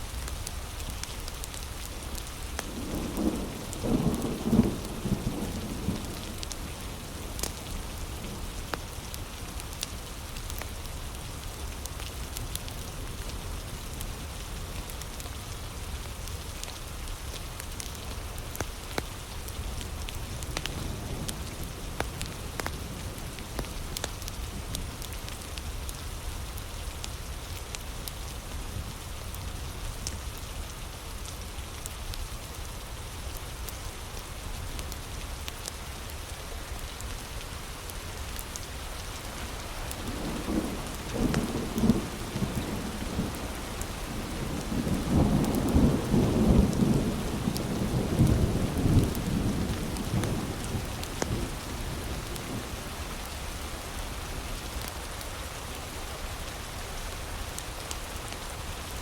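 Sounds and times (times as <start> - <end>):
heavy rain: 0.0 - 59.0
thunder rumbling: 2.6 - 8.3, 38.8 - 55.2.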